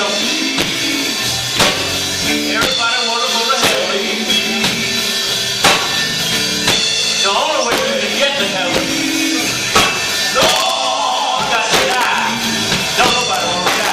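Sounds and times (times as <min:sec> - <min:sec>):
drum kit beat: 0:00.0 - 0:13.9
voices singing: 0:00.0 - 0:13.9
sustained instrument chords: 0:04.0 - 0:11.3.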